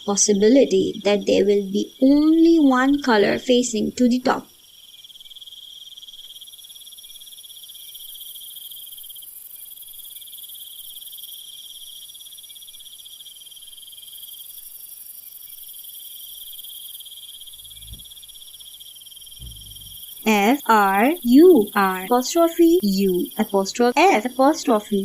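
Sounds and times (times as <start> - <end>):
crickets chirping: 0.0 - 25.0
low thump: 17.6 - 18.2, 19.3 - 20.1.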